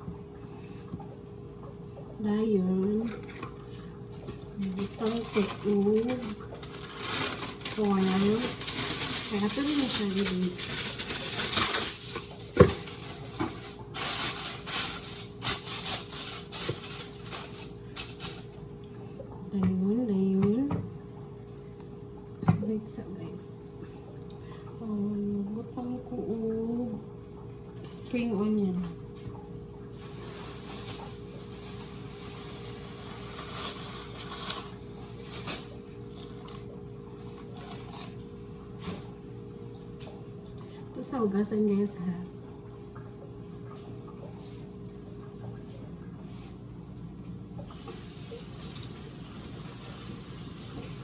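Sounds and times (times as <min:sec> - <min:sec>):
faint steady hum: 0:00.0 - 0:51.0
soft rustles and scrapes: 0:04.6 - 0:18.5, 0:29.9 - 0:36.6.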